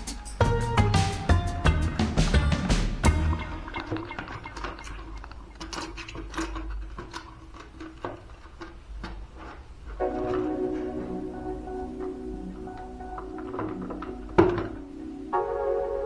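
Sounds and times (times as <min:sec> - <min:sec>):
background music: 0:00.0 - 0:04.4, 0:10.0 - 0:16.0.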